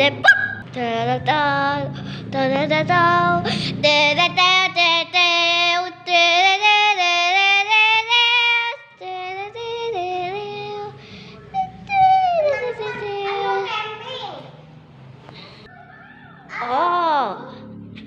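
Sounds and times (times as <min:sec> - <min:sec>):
high voice singing: 0:08.0 - 0:13.6.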